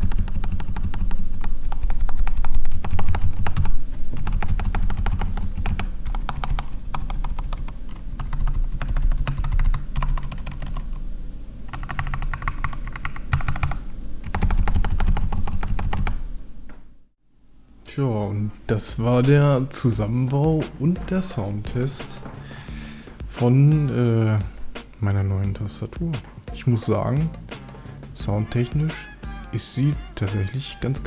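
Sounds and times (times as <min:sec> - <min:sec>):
rapid mechanical keyboard typing: 0:00.0 - 0:11.0, 0:11.7 - 0:16.2.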